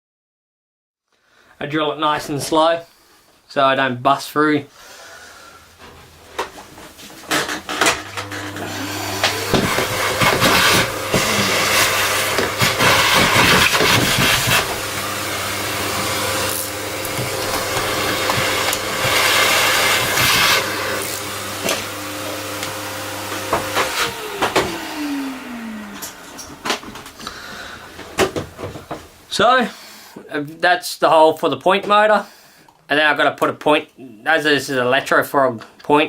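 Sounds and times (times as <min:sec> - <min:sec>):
electric drill running: 0:08.1 - 0:28.2
drill bit grinding through wood: 0:08.2 - 0:29.0.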